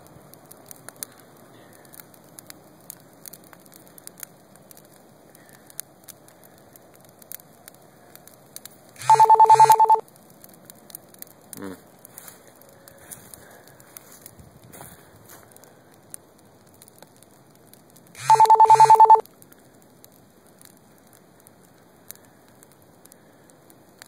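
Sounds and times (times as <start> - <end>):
fire crackling and popping: 0.0 - 24.0
pulsing electronic ring: 9.0 - 10.0, 18.2 - 19.2.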